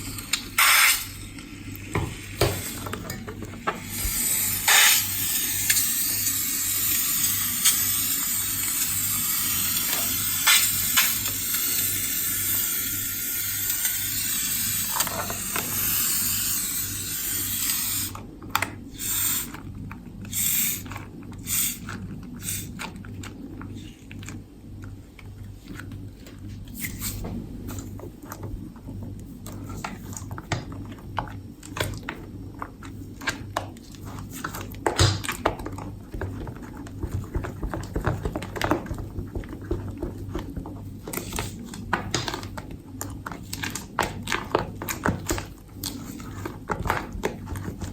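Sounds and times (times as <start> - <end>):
hiss: 3.9 - 12.8.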